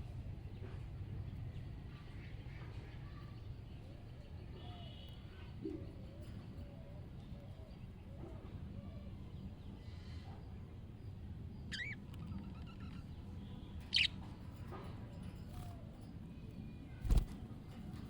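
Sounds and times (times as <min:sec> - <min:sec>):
budgerigar chirping: 0:11.7 - 0:12.0, 0:13.9 - 0:14.1.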